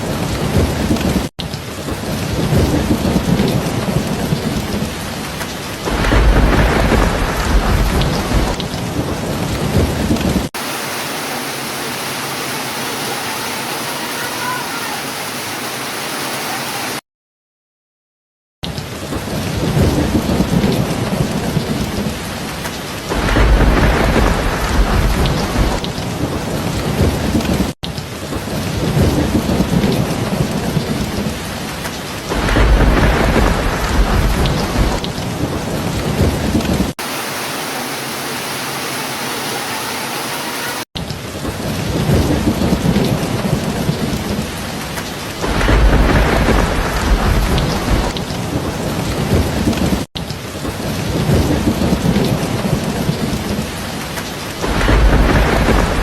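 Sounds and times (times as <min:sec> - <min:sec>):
thunder rumbling: 0:00.0 - 0:10.8, 0:18.9 - 0:37.1, 0:41.2 - 0:56.0
heavy rain: 0:00.0 - 0:17.0, 0:18.6 - 0:56.0.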